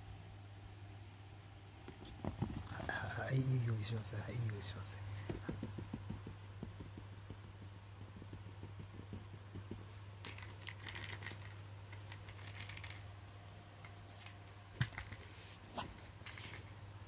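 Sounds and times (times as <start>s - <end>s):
steady low hum: 0.0s - 17.0s
clicking and crinkling handling: 8.2s - 13.1s, 13.8s - 15.3s.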